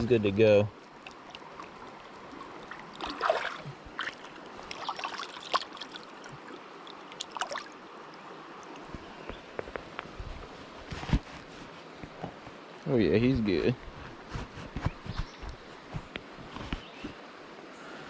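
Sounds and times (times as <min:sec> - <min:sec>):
river flowing: 0:00.0 - 0:13.5
water splashing: 0:00.7 - 0:09.0.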